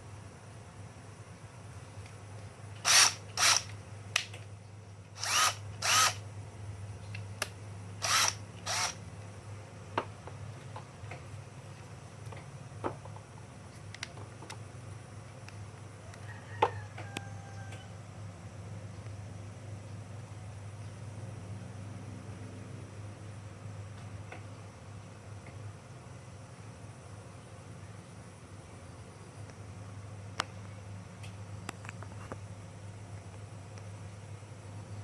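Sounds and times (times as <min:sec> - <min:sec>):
hand drill spinning: 0:02.8 - 0:03.7, 0:05.2 - 0:06.2, 0:08.0 - 0:09.0
drill clicks: 0:02.8 - 0:04.4, 0:05.1 - 0:06.2, 0:07.4 - 0:09.0.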